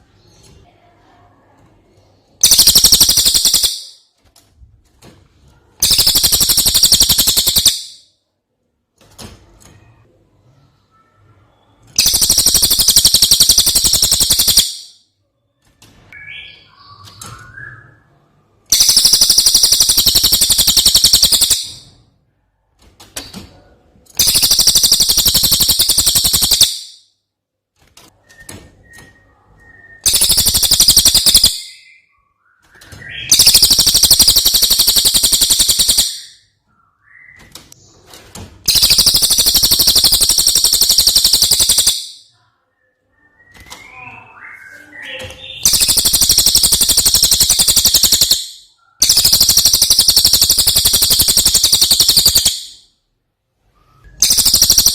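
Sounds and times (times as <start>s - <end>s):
bird trilling: 2.4s - 4.0s, 5.8s - 8.0s, 12.0s - 14.9s, 18.7s - 21.9s, 24.2s - 27.0s, 30.0s - 32.0s, 33.1s - 36.4s, 38.7s - 42.2s, 43.8s - 52.8s, 54.2s - 54.9s.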